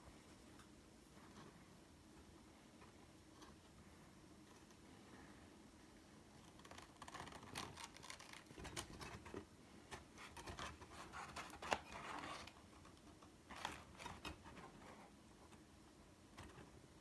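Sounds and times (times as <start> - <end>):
scratching and rubbing: 6.4 - 15.1.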